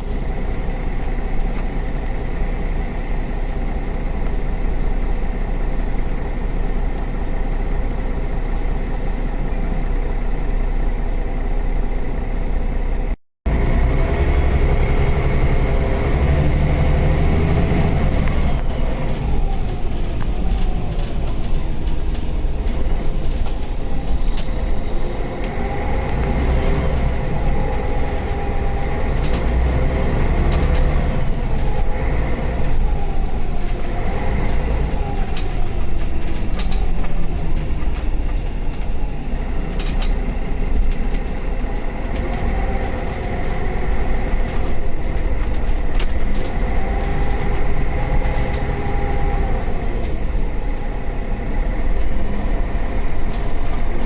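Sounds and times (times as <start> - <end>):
bus engine rumbling: 0.0 - 54.0.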